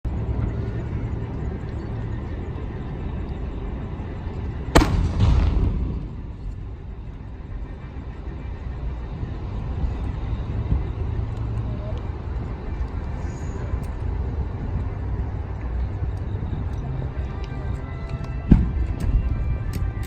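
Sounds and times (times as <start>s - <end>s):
low background rumble: 0.0s - 20.0s
firework shell bang: 4.8s - 6.3s.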